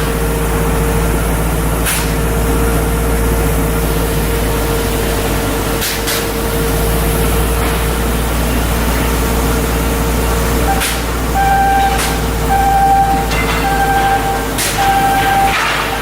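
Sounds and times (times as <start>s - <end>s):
machinery hum: 0.0s - 16.0s
held mid-pitched tone: 10.6s - 16.0s.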